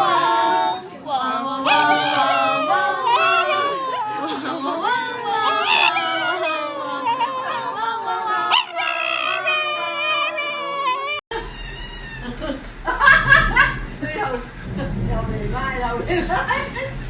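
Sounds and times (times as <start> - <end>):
dog howling: 1.6 - 12.2.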